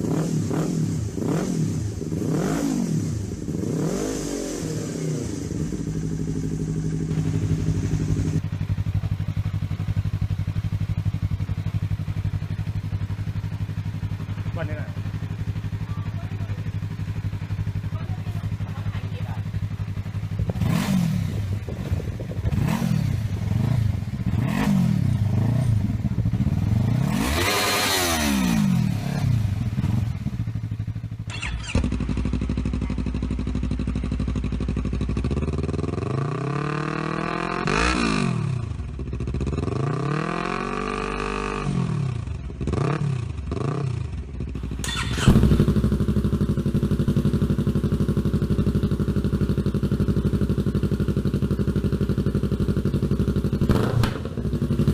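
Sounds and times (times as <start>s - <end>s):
motorcycle engine revving: 0.0s - 54.9s.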